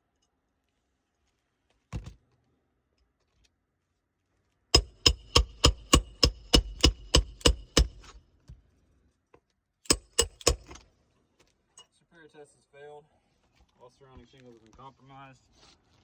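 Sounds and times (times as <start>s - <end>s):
hammer striking metal: 4.8s - 8.2s, 9.9s - 10.8s.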